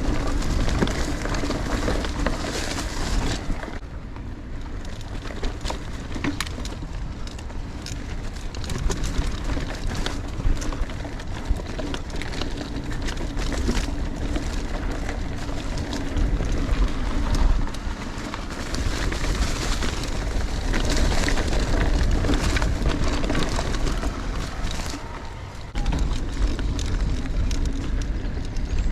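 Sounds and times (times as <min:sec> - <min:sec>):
bike clicks and rattles: 0:00.0 - 0:28.9
tyres crunching over dirt and stones: 0:00.0 - 0:28.9
low rumble: 0:14.0 - 0:28.9.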